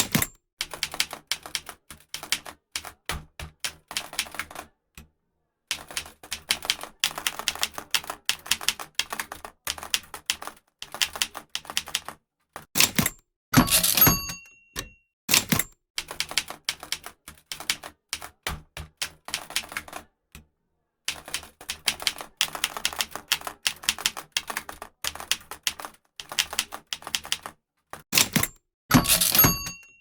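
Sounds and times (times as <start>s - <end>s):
typewriter key strikes: 0.0s - 0.4s, 12.8s - 15.8s, 28.2s - 30.0s.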